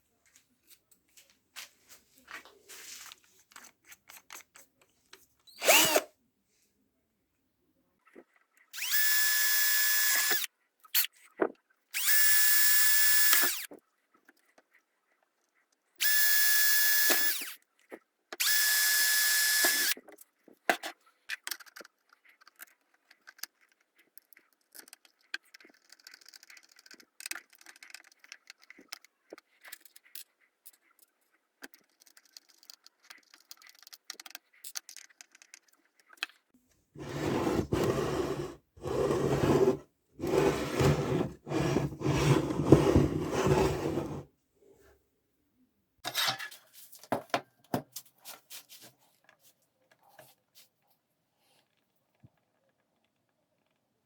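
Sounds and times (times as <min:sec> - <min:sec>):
electric drill running: 0:05.6 - 0:06.0, 0:08.8 - 0:10.5, 0:12.0 - 0:13.7, 0:16.0 - 0:17.5, 0:18.4 - 0:20.0.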